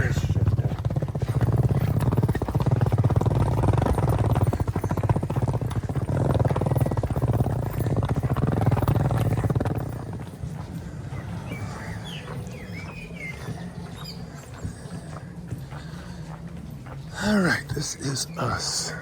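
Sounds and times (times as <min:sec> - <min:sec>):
small wheels rattling over paving: 0:00.0 - 0:17.3.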